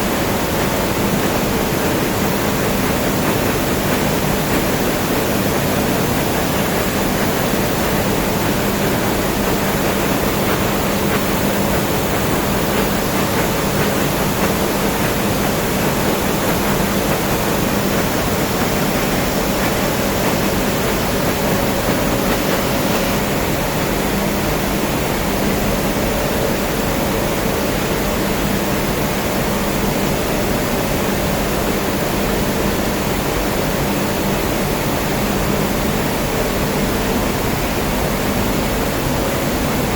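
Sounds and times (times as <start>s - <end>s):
industrial rushing roar: 0.0s - 24.5s.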